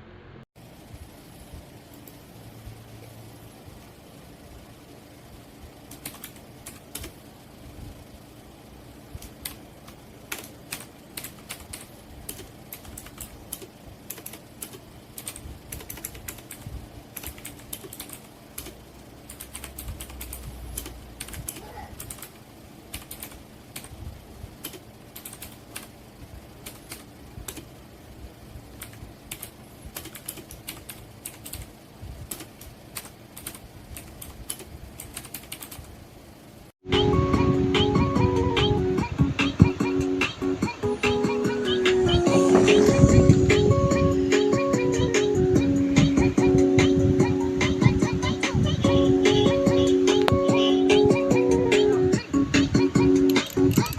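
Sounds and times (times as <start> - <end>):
loud music: 36.8 - 53.8.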